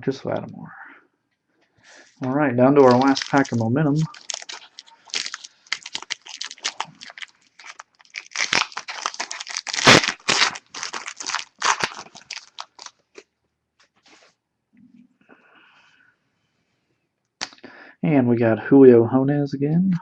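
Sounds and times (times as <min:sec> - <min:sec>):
foil wrapper tearing and crinkling: 0:02.8 - 0:13.2.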